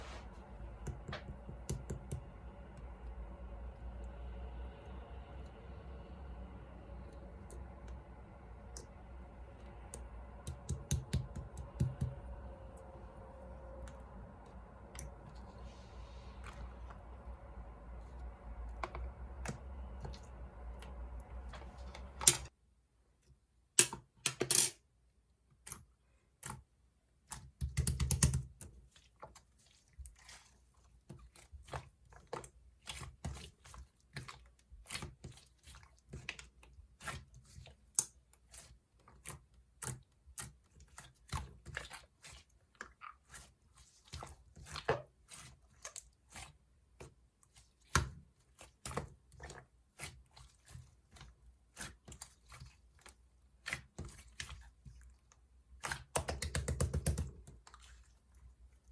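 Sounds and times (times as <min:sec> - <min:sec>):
steady low hum: 0:00.0 - 0:22.5.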